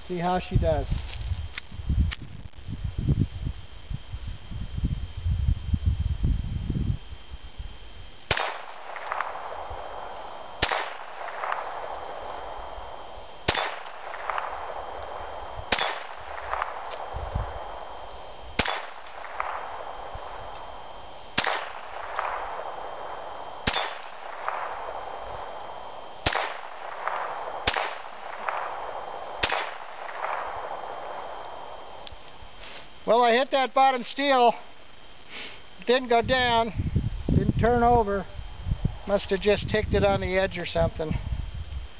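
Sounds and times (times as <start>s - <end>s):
pistol shots: 8.3s - 32.0s.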